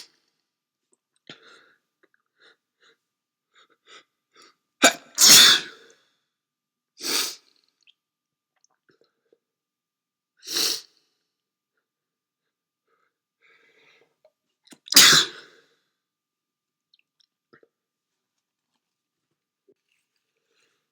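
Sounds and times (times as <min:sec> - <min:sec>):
man sneezing: 0:04.8 - 0:05.8, 0:14.9 - 0:15.5.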